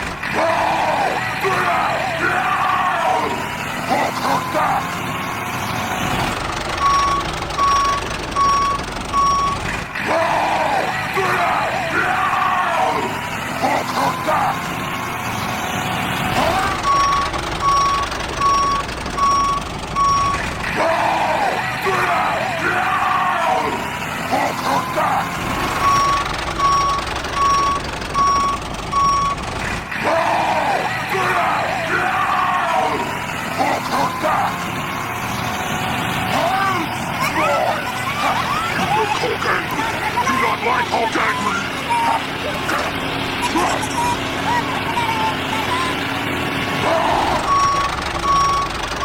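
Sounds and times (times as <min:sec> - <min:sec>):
engine rumble: 0:00.0 - 0:49.0
loud wavering yell: 0:00.3 - 0:04.9, 0:10.0 - 0:14.6, 0:20.7 - 0:25.4, 0:30.0 - 0:34.6, 0:46.7 - 0:47.5
reversing alarm beeping: 0:03.3 - 0:09.9, 0:13.0 - 0:20.6, 0:23.8 - 0:29.9, 0:32.9 - 0:49.0
person shouting: 0:46.8 - 0:47.5.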